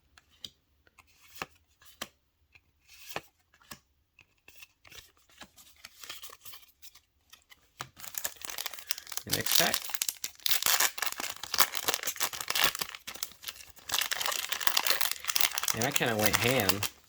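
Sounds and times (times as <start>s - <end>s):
trading cards clicking and sliding: 7.9s - 17.0s.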